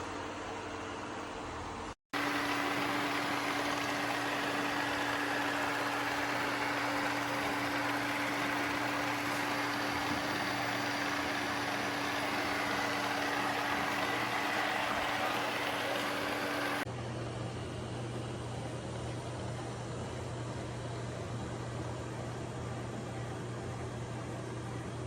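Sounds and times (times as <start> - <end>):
vacuum suction motor running: 2.1 - 16.9.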